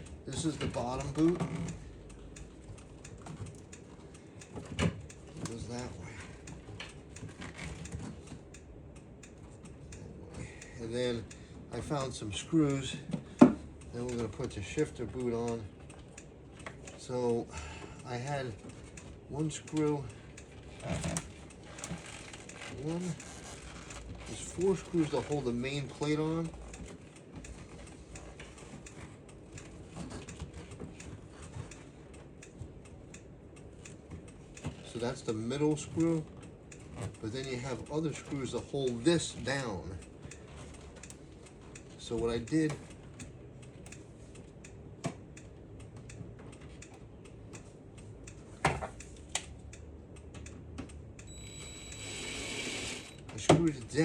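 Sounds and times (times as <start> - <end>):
faint light clicks and ticks: 0.0 - 51.4
low background hum: 0.0 - 54.0
cordless driver whining: 51.3 - 53.2.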